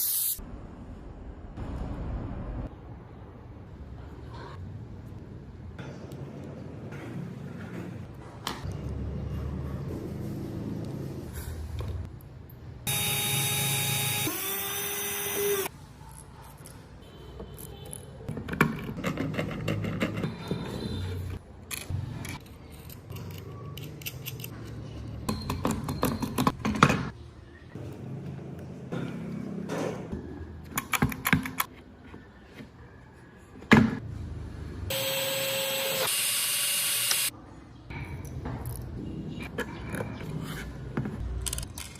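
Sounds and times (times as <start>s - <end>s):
power tool running: 12.9s - 15.7s, 34.9s - 37.3s
tools clicking: 21.7s - 26.6s.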